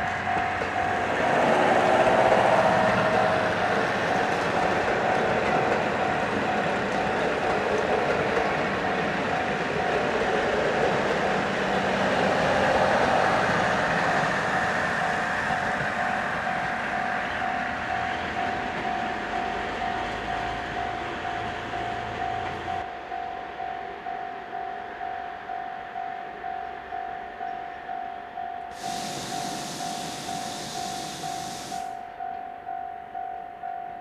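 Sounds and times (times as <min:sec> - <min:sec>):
train rumbling past: 0:00.0 - 0:33.8
level-crossing alarm bell ringing: 0:15.4 - 0:34.0.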